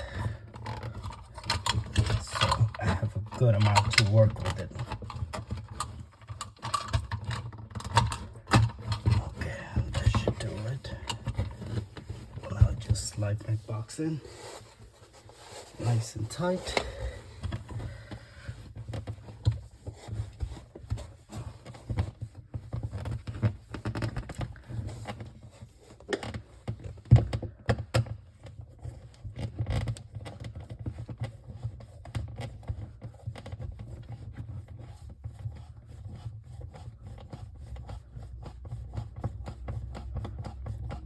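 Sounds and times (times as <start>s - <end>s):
handling clicks and knocks: 0.0s - 41.0s
plastic box scraping against drywall: 0.0s - 41.0s.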